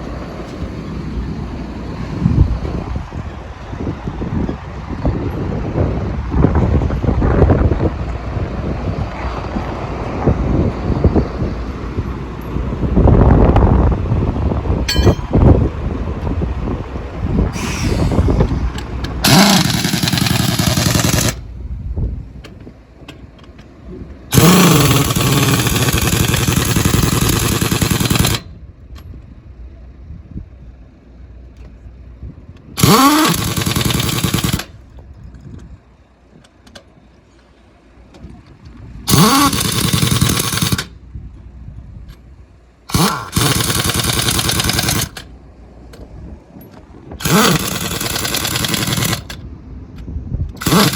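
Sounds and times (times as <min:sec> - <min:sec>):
pneumatic impact wrench rattling: 0:17.5 - 0:21.5, 0:24.3 - 0:28.5, 0:32.7 - 0:34.8, 0:39.1 - 0:41.0, 0:42.9 - 0:45.3, 0:47.2 - 0:49.4, 0:50.6 - 0:50.9.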